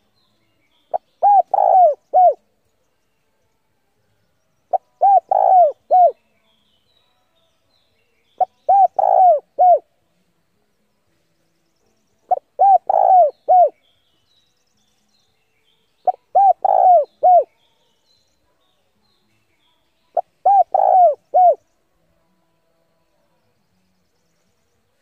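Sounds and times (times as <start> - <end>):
dove cooing: 0.9 - 2.4, 4.7 - 6.2, 8.4 - 9.9, 12.3 - 13.8, 16.1 - 17.5, 20.2 - 21.6.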